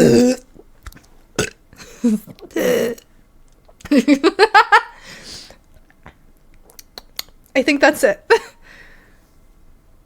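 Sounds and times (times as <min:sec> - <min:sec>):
woman burping: 0:00.0 - 0:00.7, 0:01.4 - 0:03.1
woman giggling: 0:08.3 - 0:08.6.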